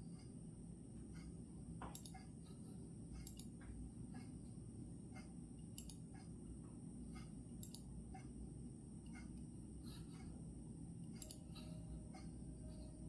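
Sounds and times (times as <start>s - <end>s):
low background noise: 0.0s - 13.0s
clock ticking: 3.1s - 4.4s.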